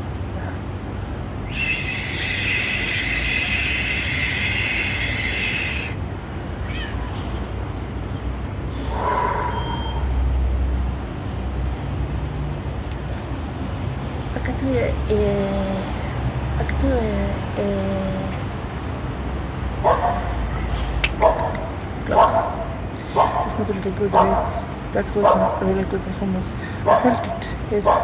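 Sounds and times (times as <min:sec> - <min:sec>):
street traffic rumbling: 0:00.0 - 0:28.0
loud hiss with high tones: 0:01.5 - 0:06.0
heavy low rumble: 0:08.5 - 0:11.2.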